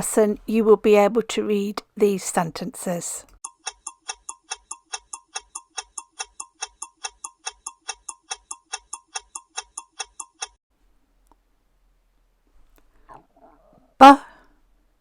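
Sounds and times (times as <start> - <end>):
clock ticking: 3.4 - 10.6.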